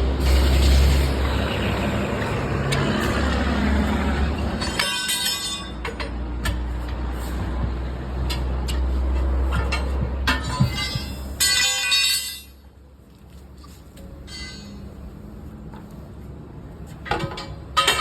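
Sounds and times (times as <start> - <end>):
heavy engine droning: 0.0 - 11.4.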